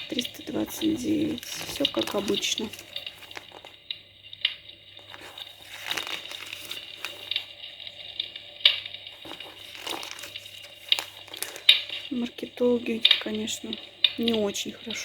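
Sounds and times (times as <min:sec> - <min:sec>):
paper pages rustling and turning: 0:00.0 - 0:03.8, 0:05.0 - 0:12.2
sharp paper snaps: 0:08.6 - 0:12.1.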